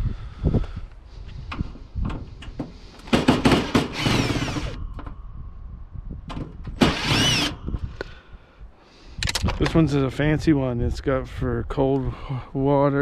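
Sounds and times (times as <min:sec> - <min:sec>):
power drill whining: 0:03.3 - 0:04.8, 0:06.8 - 0:07.6.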